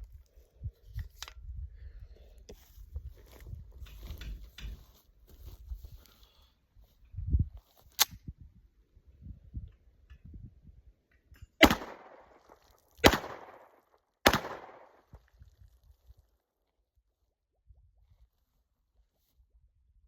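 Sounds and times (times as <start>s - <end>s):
pistol shots echoing: 11.6s - 15.0s.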